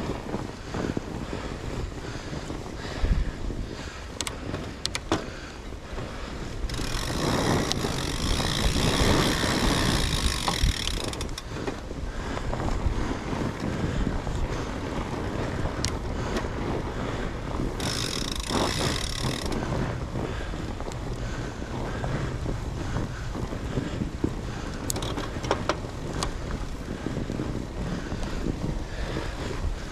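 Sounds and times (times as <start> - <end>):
bike riding on snow: 0.0 - 29.9
wind buffeting microphone: 0.0 - 29.9
bike clicks and knocks: 4.2 - 13.7, 15.7 - 16.8, 17.6 - 21.0, 23.8 - 27.5.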